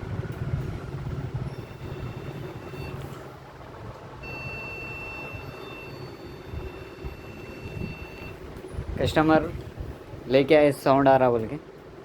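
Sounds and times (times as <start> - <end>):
long high-pitched beeps: 1.5 - 3.0, 4.2 - 8.4.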